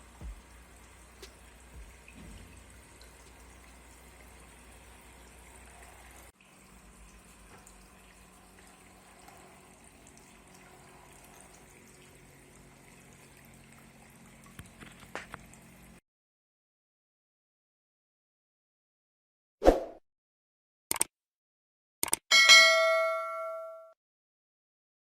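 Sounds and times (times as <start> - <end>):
water splashes: 0.0 - 12.1
water trickling: 0.0 - 16.0.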